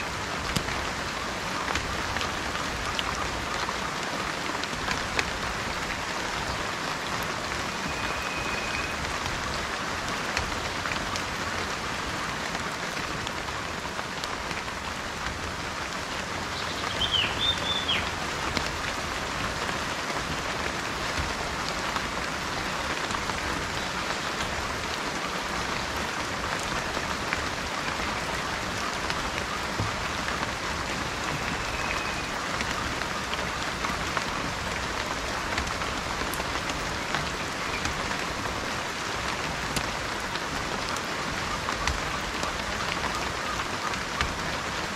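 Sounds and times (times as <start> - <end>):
raindrops ticking: 0.0 - 44.9
steady rain falling: 0.0 - 44.9
bird call: 7.6 - 9.1, 16.6 - 18.2, 31.1 - 32.4
faint whistles: 7.7 - 9.0.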